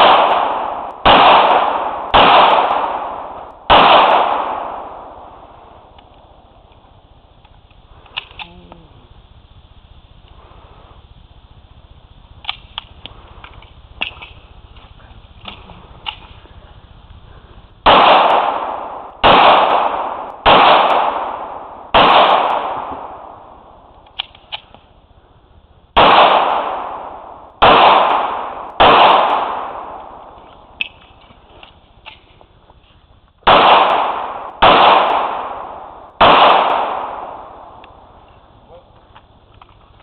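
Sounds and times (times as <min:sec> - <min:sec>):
pistol shots: 0:00.0 - 0:06.3, 0:17.8 - 0:24.8, 0:26.0 - 0:31.0, 0:33.4 - 0:38.1.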